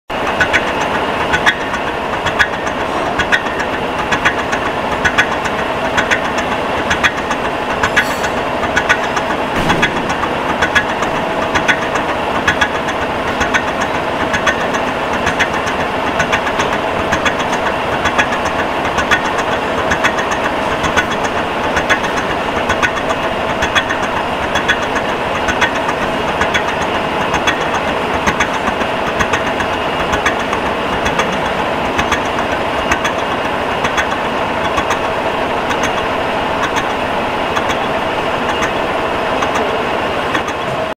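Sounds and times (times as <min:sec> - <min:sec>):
regular ticks: 0:10.1 - 0:35.1, 0:36.6 - 0:37.9.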